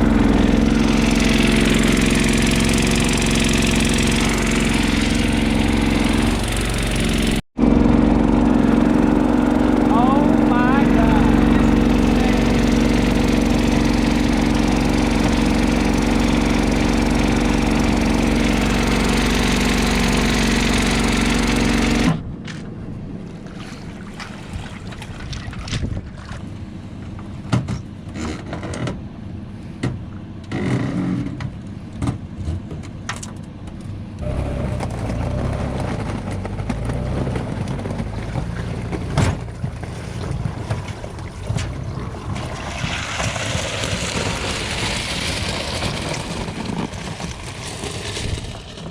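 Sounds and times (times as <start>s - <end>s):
small engine running: 0.0s - 22.2s, 34.2s - 48.9s.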